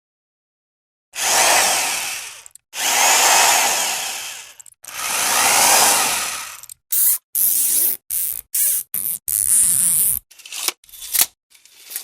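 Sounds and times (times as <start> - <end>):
power tool running: 1.2 - 8.8.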